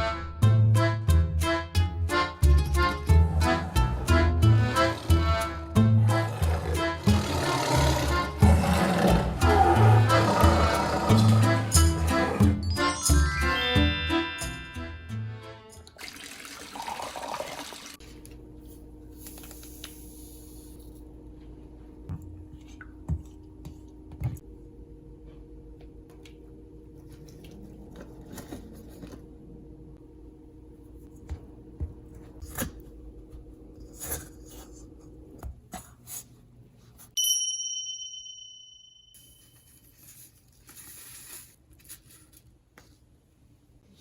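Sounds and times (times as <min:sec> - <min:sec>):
appliance hum: 0:00.0 - 0:37.2
bright ding: 0:37.2 - 0:39.7.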